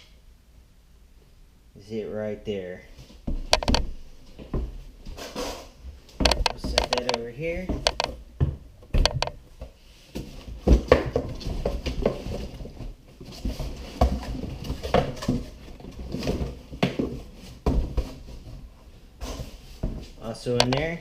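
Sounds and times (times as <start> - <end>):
parts knocking and clinking: 3.4 - 4.0, 6.2 - 8.2.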